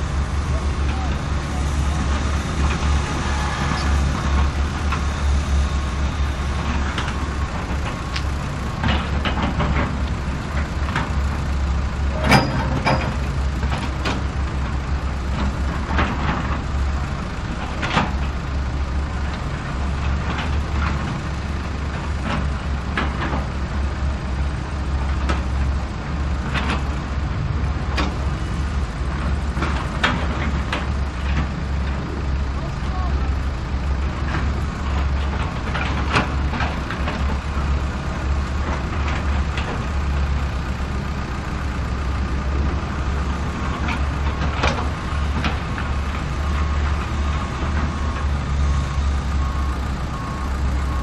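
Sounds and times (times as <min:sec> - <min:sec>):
vehicle engine rumble: 0:00.0 - 0:51.0
rattles and knocks: 0:06.6 - 0:14.3.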